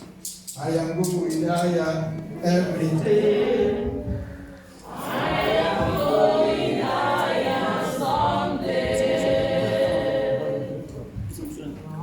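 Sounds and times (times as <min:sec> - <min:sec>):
congregation singing gospel chorus: 0:02.4 - 0:11.3.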